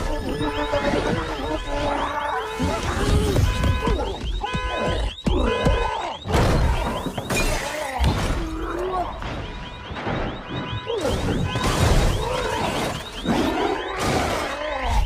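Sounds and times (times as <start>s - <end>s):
car alarm warbling: 0.0s - 15.0s
glass shattering: 6.3s - 15.0s.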